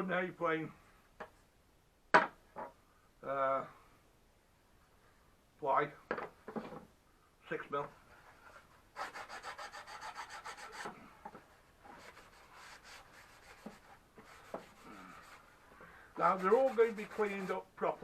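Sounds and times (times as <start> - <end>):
sanding plywood by hand: 8.1 - 17.7.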